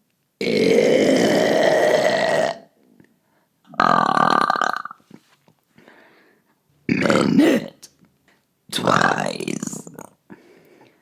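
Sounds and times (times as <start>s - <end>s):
woman burping: 0.4s - 2.7s, 3.7s - 5.0s.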